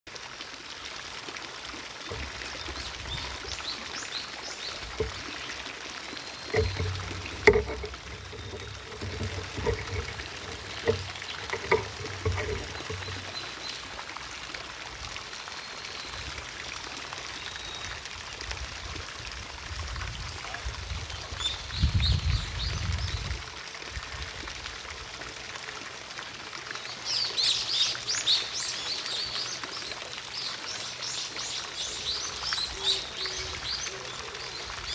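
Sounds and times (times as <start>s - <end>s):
fountain splashing: 0.1s - 34.9s
low rumbles: 6.5s - 13.4s.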